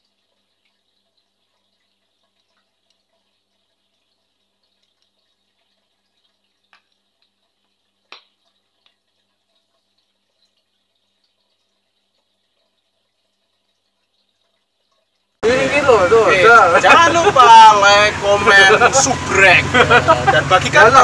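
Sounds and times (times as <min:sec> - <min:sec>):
small ticks: 0:00.0 - 0:15.3.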